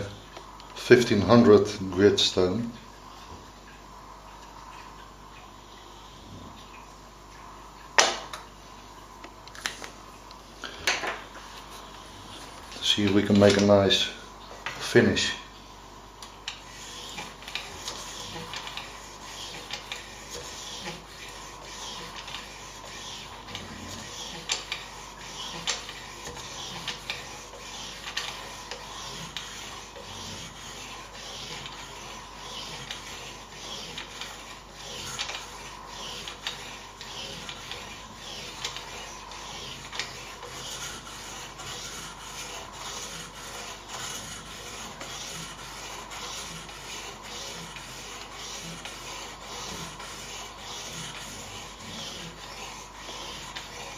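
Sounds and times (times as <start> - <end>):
knife scraping on sharpening stone: 24.0 - 53.9.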